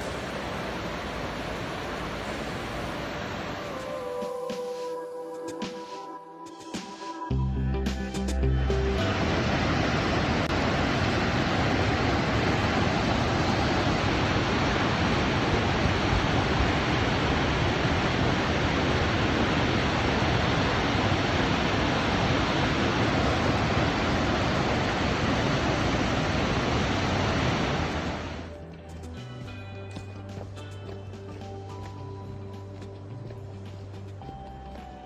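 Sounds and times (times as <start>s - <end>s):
waterfall rushing: 0.0s - 4.3s, 8.8s - 28.5s.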